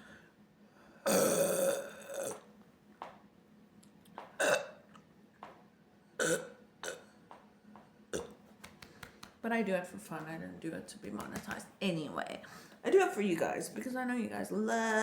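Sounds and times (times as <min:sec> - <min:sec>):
woman burping: 0:01.1 - 0:02.5, 0:04.4 - 0:04.8, 0:06.2 - 0:07.1, 0:08.1 - 0:08.4.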